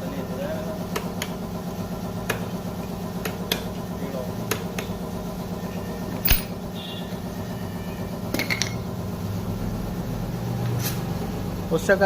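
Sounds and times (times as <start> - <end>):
low engine-like hum: 0.0 - 12.0
metal tools clinking on engine parts: 6.2 - 6.6.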